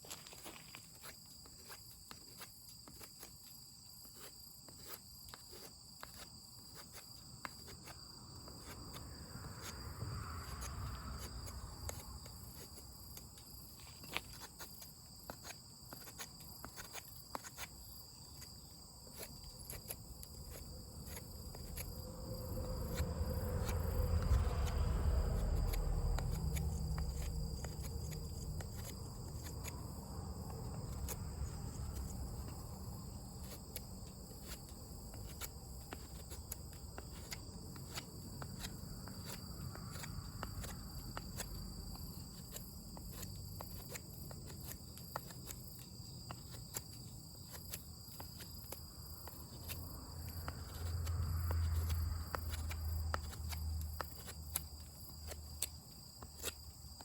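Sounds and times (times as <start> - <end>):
crickets chirping: 0.0 - 57.0
low rumble: 22.0 - 33.1.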